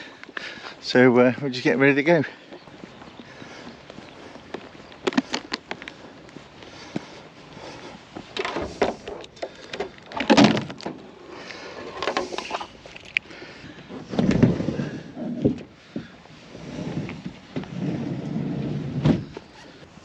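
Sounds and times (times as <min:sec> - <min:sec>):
clicks and knocks of handling: 0:04.5 - 0:06.0.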